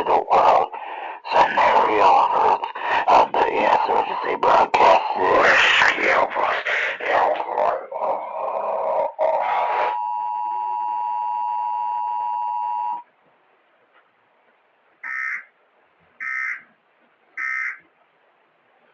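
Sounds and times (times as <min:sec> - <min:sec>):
two-tone attention signal: 0:09.9 - 0:13.0.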